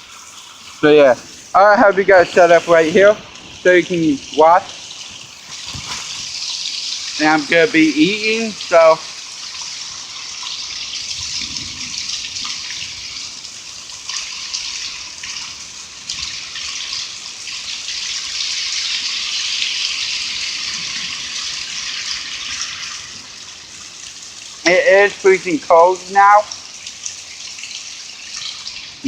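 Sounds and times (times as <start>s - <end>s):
heavy rain with hail: 0.0s - 29.0s.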